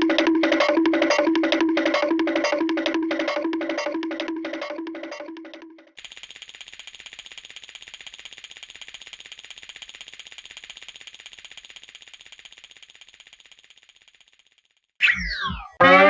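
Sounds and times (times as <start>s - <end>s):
cartoon rattling ring: 6.0s - 15.0s.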